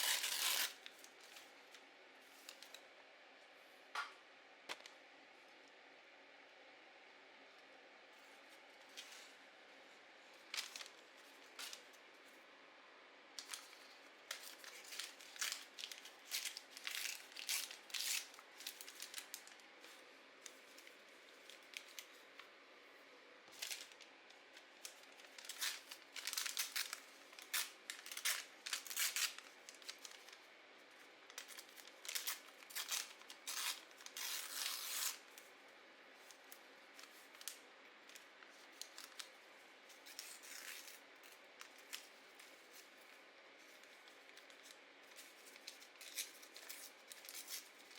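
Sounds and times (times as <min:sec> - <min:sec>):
paper rustling or tearing: 0:00.0 - 0:01.4, 0:13.4 - 0:20.0, 0:23.5 - 0:24.0, 0:24.8 - 0:30.4, 0:31.3 - 0:35.3, 0:43.7 - 0:47.9.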